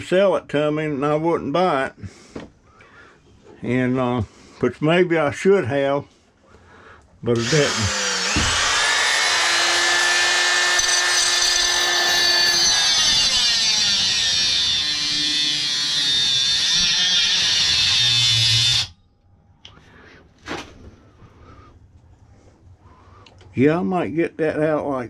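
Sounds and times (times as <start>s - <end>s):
power tool grinding metal: 7.4s - 19.0s.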